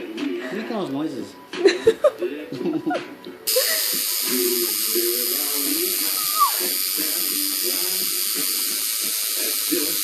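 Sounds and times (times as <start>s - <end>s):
tattoo machine buzzing: 3.5s - 10.0s
person making wavering vocal noises: 6.2s - 6.7s
person squealing: 6.2s - 6.8s.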